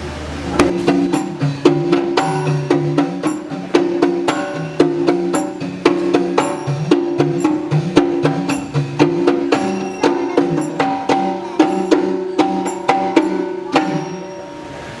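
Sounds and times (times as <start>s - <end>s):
drum strokes: 0.4s - 15.0s
hand cymbals ringing: 0.5s - 15.0s.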